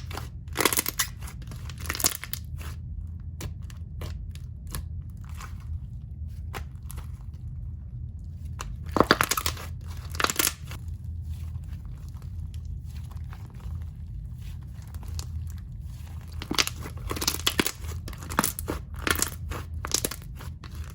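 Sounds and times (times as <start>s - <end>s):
crunchy slime squishes: 0.0s - 20.9s.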